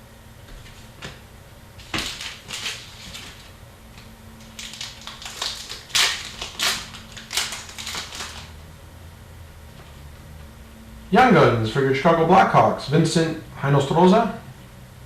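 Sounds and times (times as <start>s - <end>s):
cards and packaging rustling: 1.8s - 8.6s.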